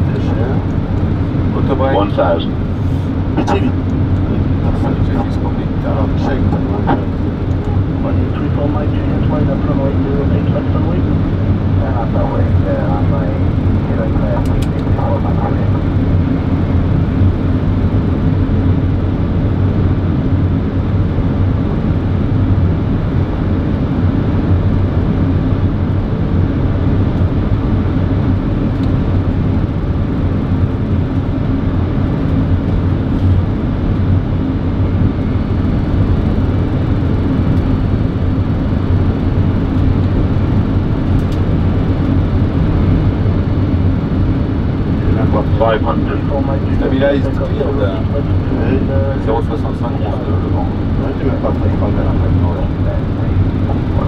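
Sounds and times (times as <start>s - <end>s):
airflow rushing: 0.0s - 18.4s
low engine hum: 0.0s - 54.0s.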